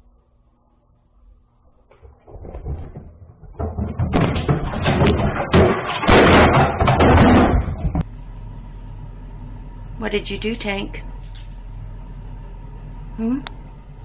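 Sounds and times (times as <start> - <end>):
rapid clatter of knocks and thumps: 1.9 - 8.0.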